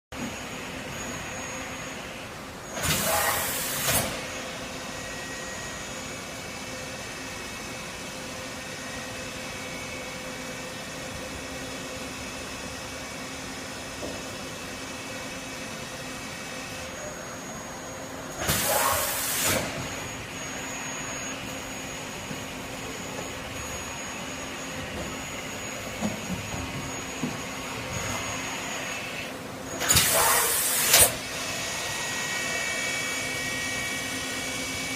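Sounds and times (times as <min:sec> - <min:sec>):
machine humming and whining: 0:00.2 - 0:34.9
hissing air blasts: 0:18.4 - 0:19.8, 0:29.8 - 0:31.2.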